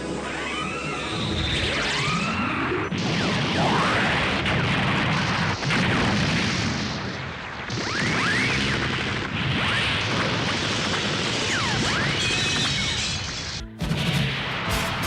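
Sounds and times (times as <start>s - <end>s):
explosions and crashes: 2.9s - 12.3s.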